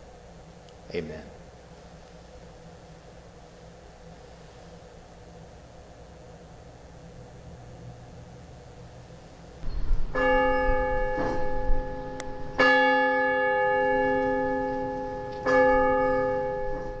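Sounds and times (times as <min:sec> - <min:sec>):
church bell ringing: 0:09.6 - 0:17.0.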